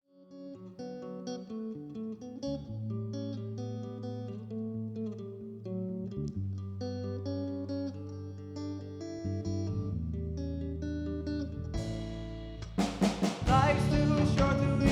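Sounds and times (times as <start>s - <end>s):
guitar picking single notes: 0.2s - 14.9s
held bass notes: 9.3s - 14.9s.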